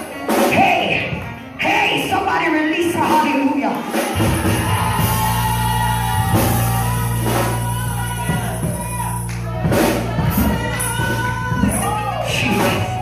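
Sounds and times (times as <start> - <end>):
voices singing or shouting: 3.8 - 13.0
organ chords: 3.9 - 13.0
drum hits: 4.1 - 13.0.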